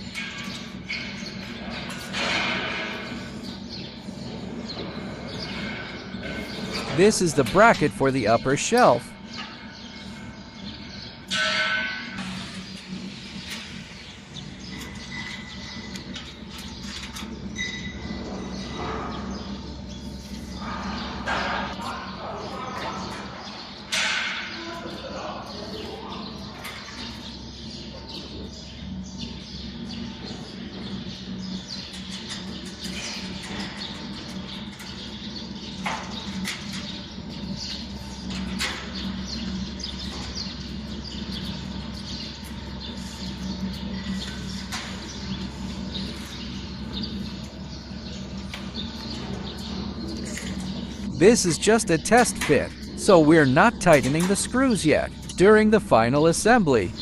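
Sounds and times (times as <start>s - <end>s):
steady low hum: 0.0s - 11.4s, 26.4s - 57.0s.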